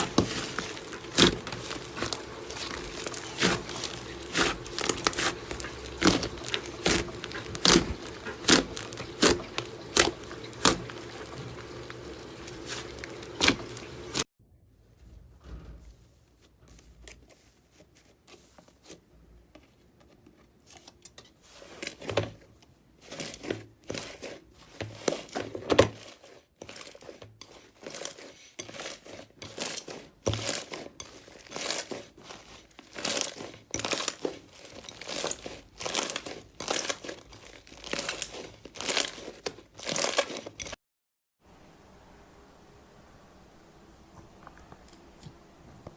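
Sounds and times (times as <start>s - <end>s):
crunchy slime crackling: 0.0s - 14.2s, 26.7s - 40.8s.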